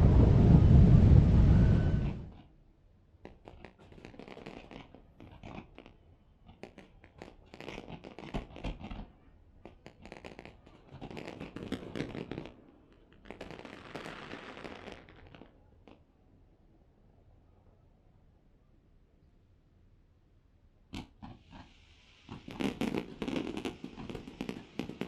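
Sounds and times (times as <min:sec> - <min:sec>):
fireworks crackling: 0:00.0 - 0:02.3, 0:03.3 - 0:08.8, 0:09.7 - 0:15.6, 0:21.2 - 0:25.0
hiss: 0:21.3 - 0:25.0.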